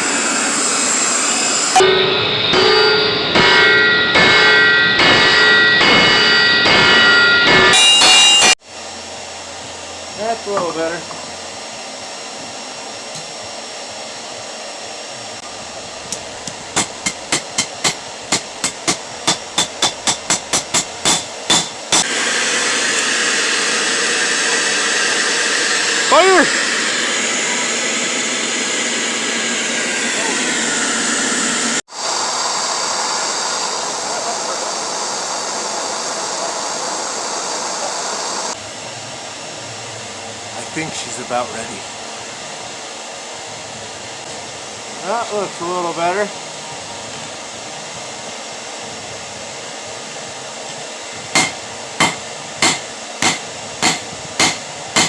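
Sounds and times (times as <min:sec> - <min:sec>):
forge blowing: 0:00.0 - 0:55.0
hammer striking steel on anvil: 0:01.8 - 0:08.6, 0:16.8 - 0:22.1, 0:51.4 - 0:55.0.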